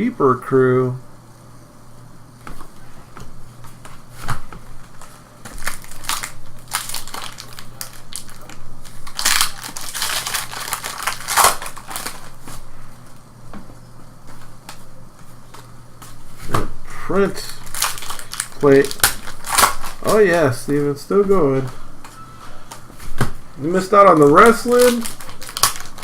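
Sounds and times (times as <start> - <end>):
foil packs crinkling and tearing: 4.8 - 12.6, 17.2 - 20.8, 23.6 - 26.0.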